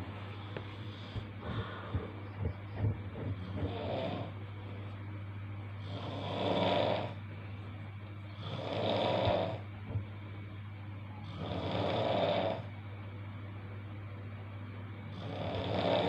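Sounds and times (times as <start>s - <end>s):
steady low hum: 0.0s - 16.0s
person snoring loudly: 2.8s - 4.4s, 5.8s - 7.2s, 8.4s - 9.6s, 11.3s - 12.7s, 15.1s - 16.0s.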